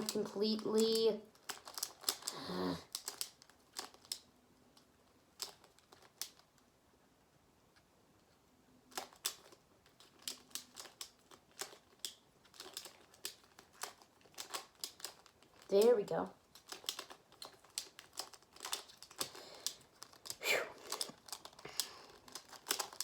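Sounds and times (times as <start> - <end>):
plastic puzzle clicking: 0.0 - 6.6, 8.8 - 23.0.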